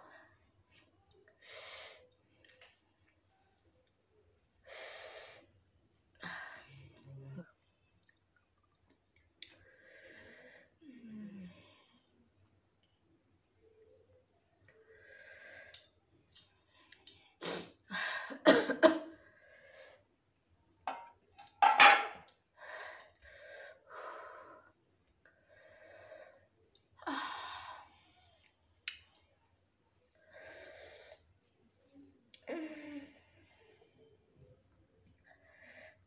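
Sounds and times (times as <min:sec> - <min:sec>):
person coughing hard: 0:18.4 - 0:19.1.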